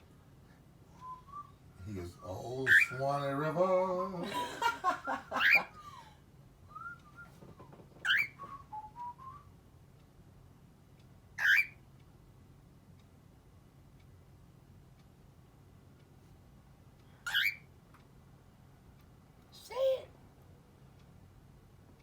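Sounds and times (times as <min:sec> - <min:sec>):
low steady hum: 0:00.0 - 0:22.0
cockatiel whistling: 0:02.6 - 0:03.0, 0:05.1 - 0:05.9, 0:08.0 - 0:09.5, 0:11.4 - 0:11.8, 0:17.3 - 0:17.6
faint tick: 0:08.4 - 0:11.2, 0:11.9 - 0:19.5, 0:20.4 - 0:22.0.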